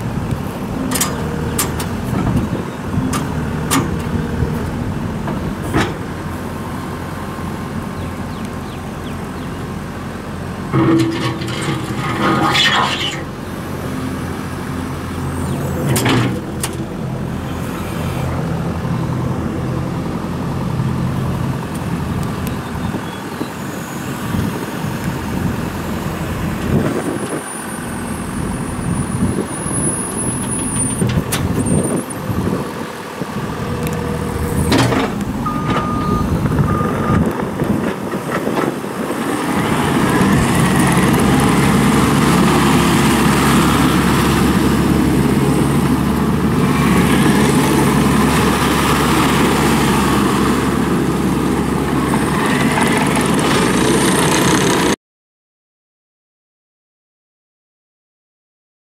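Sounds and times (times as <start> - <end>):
diesel engine running: 0.0 - 55.0
short beeps: 35.4 - 37.3.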